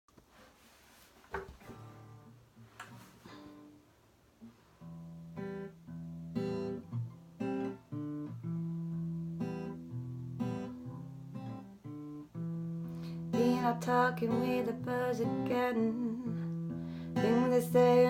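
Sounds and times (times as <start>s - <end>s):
acoustic guitar chords: 4.8s - 18.0s.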